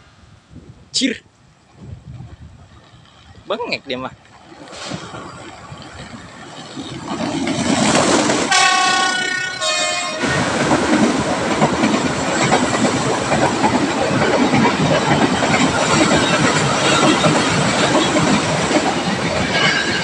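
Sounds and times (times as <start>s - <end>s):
train wheel and rail clatter: 1.5s - 20.0s
train horn blasts: 8.5s - 10.4s.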